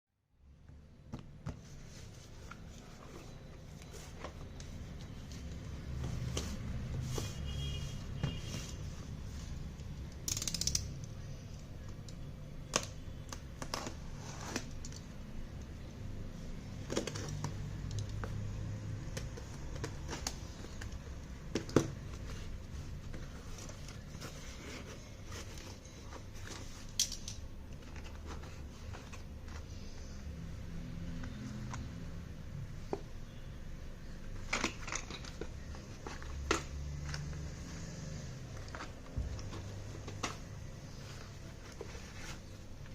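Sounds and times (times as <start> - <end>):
hands handling parcel packaging: 34.0 - 42.9.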